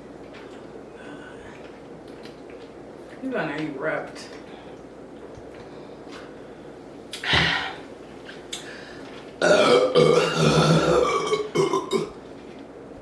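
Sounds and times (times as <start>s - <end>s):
person burping loudly: 9.4s - 12.2s.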